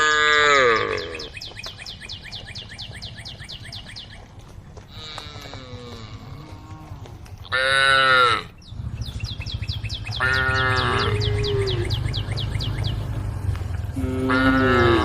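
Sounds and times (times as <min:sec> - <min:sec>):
cattle mooing: 0:00.0 - 0:01.3, 0:04.9 - 0:08.5, 0:10.1 - 0:15.0
steady low rumble: 0:08.6 - 0:15.0.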